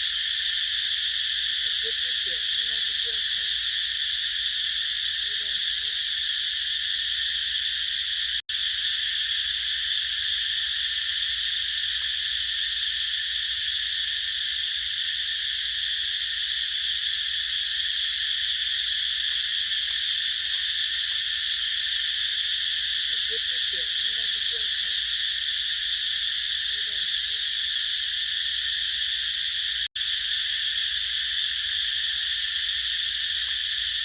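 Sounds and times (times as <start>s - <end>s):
cicadas singing: 0.0s - 34.0s.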